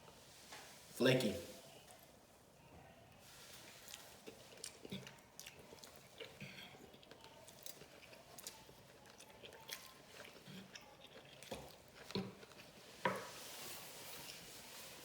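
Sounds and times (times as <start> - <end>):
person chewing food: 3.6 - 14.8.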